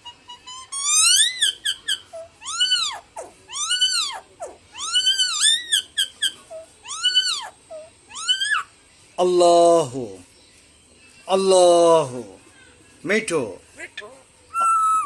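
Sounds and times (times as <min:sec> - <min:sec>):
myna calling: 0:00.0 - 0:08.8, 0:13.7 - 0:15.0.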